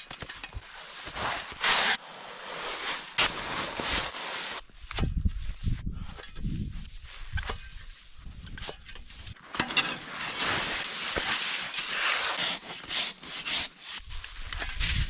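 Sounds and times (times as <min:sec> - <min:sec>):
shovel scraping packed snow: 0:00.6 - 0:04.7, 0:09.0 - 0:15.0.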